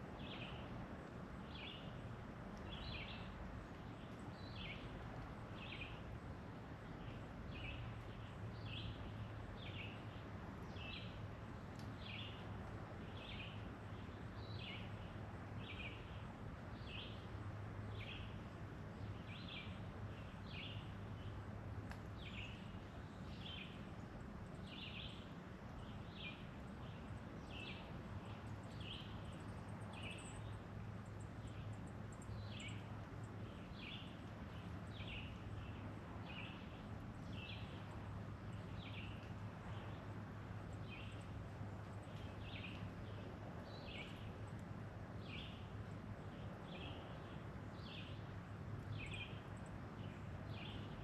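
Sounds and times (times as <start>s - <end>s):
bird chirping: 26.1s - 30.6s.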